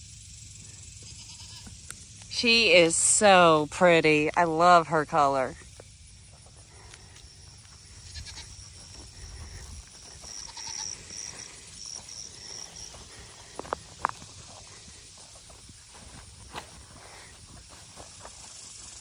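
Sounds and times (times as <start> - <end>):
goats milling about: 0.5 - 19.0
goat calls: 1.0 - 1.7, 7.8 - 8.6, 9.2 - 11.5.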